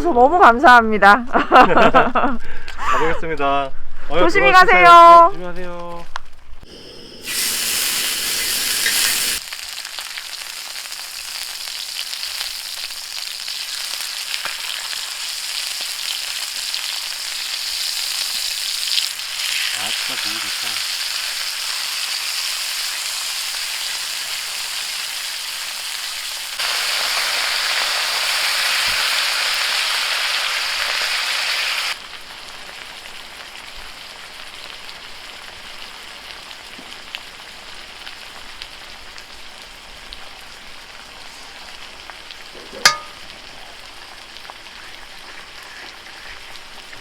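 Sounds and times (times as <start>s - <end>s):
pork sizzling in a pan: 6.6s - 47.0s
sharp clink: 42.9s - 43.2s.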